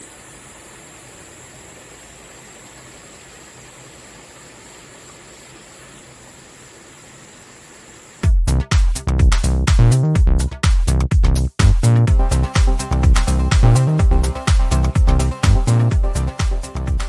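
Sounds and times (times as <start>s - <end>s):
thin high steady tone: 0.0s - 8.2s
electronic dance music: 8.2s - 17.0s.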